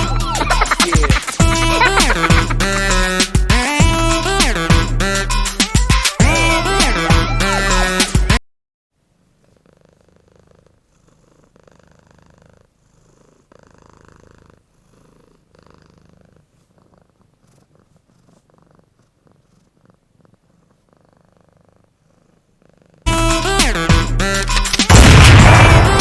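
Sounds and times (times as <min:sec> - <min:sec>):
cat purring: 0:00.0 - 0:03.8, 0:09.1 - 0:23.1.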